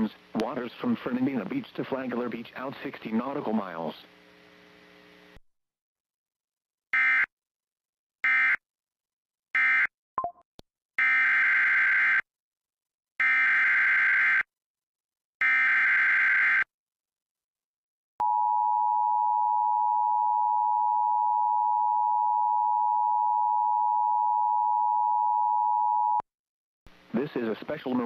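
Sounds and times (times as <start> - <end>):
long steady attention tone: 18.2 - 26.2.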